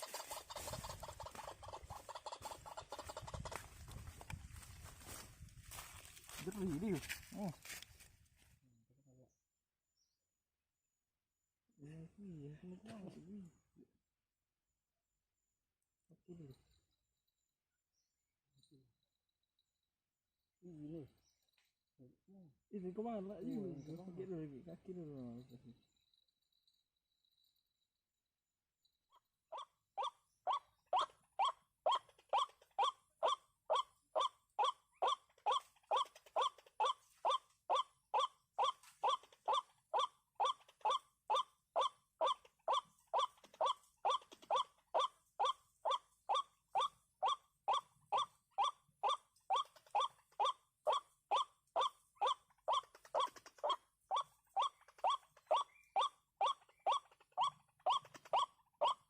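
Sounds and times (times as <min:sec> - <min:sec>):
waterhen harsh kwak calls: 0:00.0 - 0:03.6.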